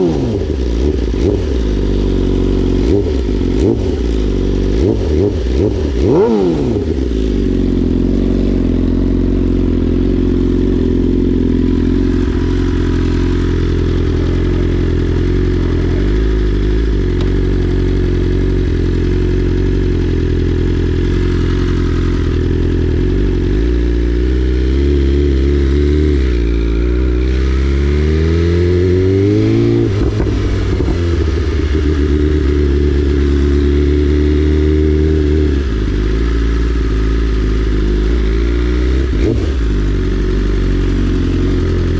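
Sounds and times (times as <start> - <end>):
loud motorcycle engine revving: 0.0 - 41.9.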